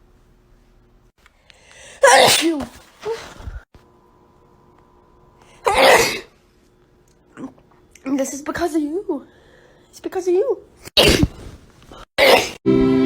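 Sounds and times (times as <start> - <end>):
person sneezing: 1.8 - 3.6, 5.6 - 6.3, 10.9 - 12.6.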